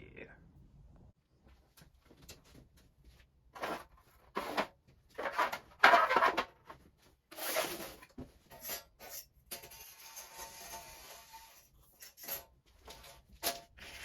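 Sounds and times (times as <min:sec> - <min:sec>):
parts scraping: 0:03.6 - 0:14.0.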